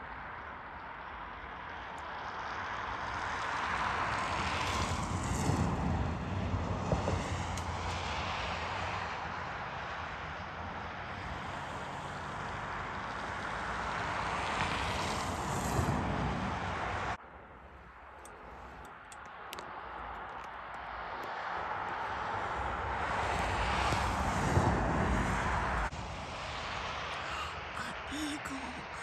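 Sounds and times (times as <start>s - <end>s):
passing vehicle rushing: 21.0s - 27.1s.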